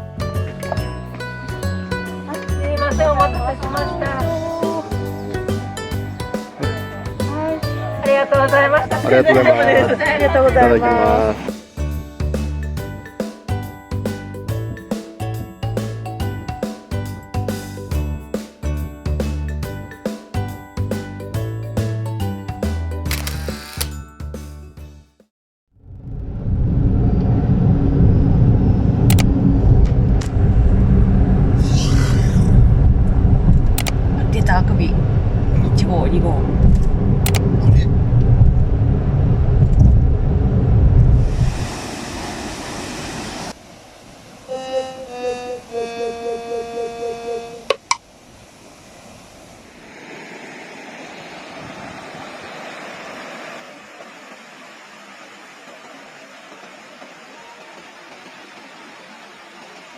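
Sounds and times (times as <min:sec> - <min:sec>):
running water rushing: 0:02.2 - 0:11.8, 0:41.0 - 0:46.1, 0:47.6 - 0:59.9
sharp clicks: 0:23.1 - 0:24.0, 0:29.1 - 0:29.3, 0:33.8 - 0:34.0, 0:37.3 - 0:37.5
car rumbling on the move: 0:25.8 - 0:41.8.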